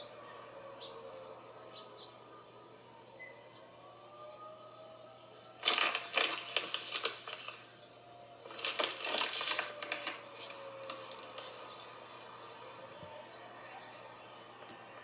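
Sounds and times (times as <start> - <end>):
distant warning siren: 0.0 - 15.0
rapid dense clicking and crackling: 5.6 - 7.6, 8.4 - 11.6.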